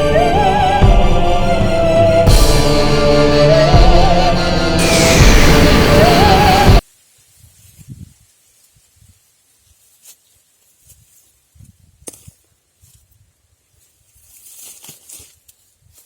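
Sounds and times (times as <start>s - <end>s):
music: 0.0s - 6.8s
faint rustles: 6.9s - 16.0s.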